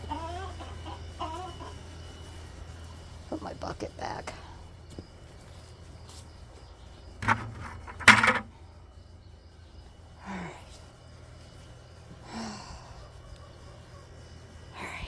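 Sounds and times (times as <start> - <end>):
bucket knocking: 7.2 - 8.5
bucket clattering: 7.2 - 8.6.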